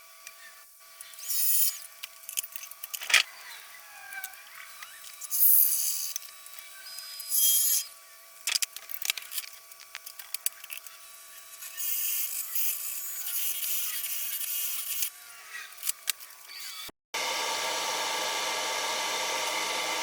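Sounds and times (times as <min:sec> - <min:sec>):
wood-turning tool whining: 0:02.8 - 0:08.0, 0:10.4 - 0:20.0.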